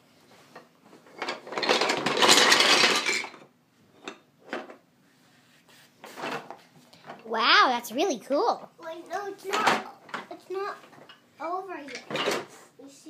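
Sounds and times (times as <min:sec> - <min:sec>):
small hard pieces clattering out: 0:01.2 - 0:03.4.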